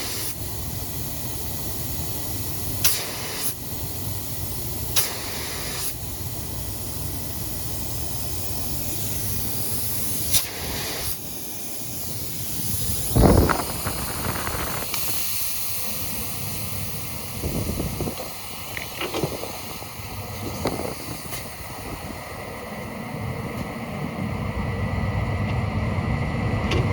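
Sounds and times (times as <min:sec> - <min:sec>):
pressurized gas hissing: 0:00.0 - 0:23.4
gas sputtering: 0:08.3 - 0:22.2.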